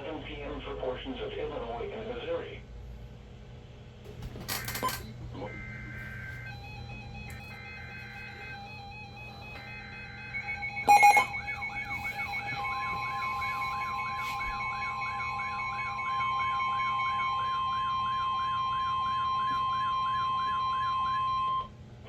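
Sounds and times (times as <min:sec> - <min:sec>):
fast warbling alarm: 0:04.1 - 0:21.7
two-tone alert data burst: 0:04.4 - 0:15.8
steady high alert tone: 0:04.4 - 0:21.6.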